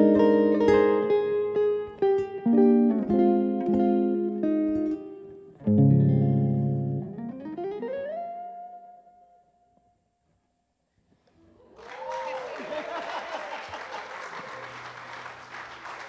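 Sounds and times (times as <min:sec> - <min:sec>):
guitars playing: 0:00.0 - 0:10.0.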